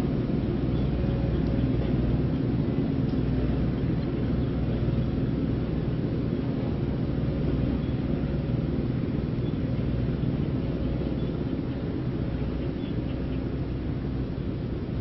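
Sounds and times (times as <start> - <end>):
steady low rumble: 0.0 - 15.0.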